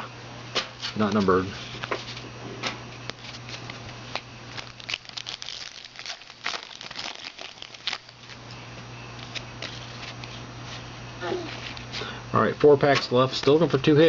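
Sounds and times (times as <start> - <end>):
foil wrapper crinkling and tearing: 3.2 - 8.4.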